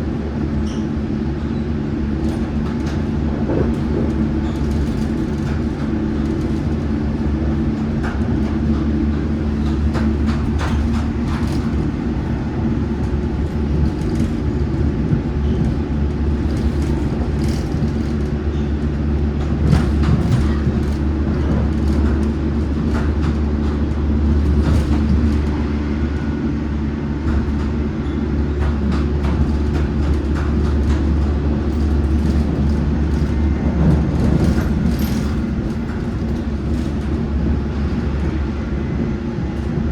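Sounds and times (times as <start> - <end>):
train motors and wheels droning: 0.0 - 39.9.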